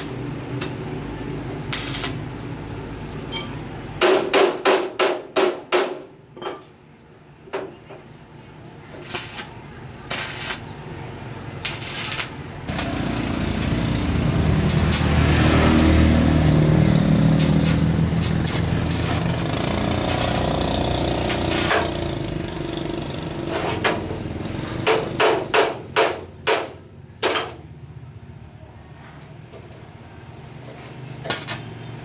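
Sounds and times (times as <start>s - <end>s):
engine running steadily: 12.7s - 25.3s.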